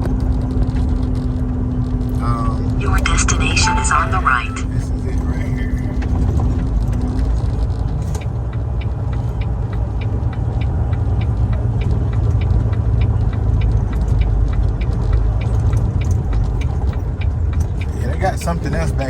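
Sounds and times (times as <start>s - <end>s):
truck diesel engine rumbling: 0.0s - 19.0s
light regular ticking: 5.8s - 19.0s.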